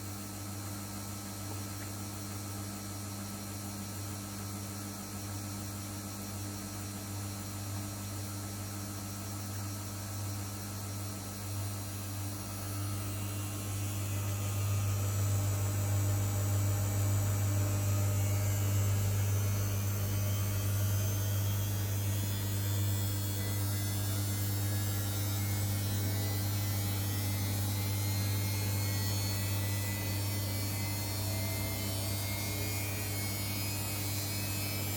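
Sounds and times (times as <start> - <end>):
washing machine spinning hum: 0.0 - 34.9.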